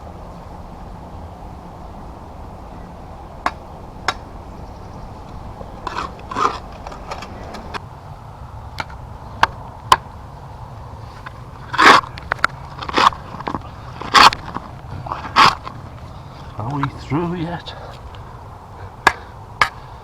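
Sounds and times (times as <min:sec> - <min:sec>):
shovel scraping soil: 0:05.8 - 0:07.8, 0:11.0 - 0:16.6.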